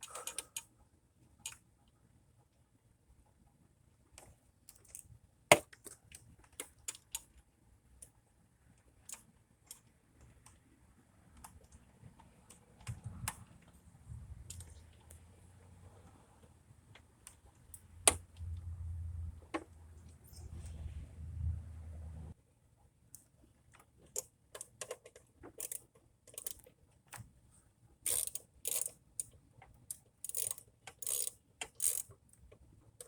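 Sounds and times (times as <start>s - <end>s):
low rumble: 20.1s - 22.3s
metallic clicks from hand tools: 28.1s - 32.1s.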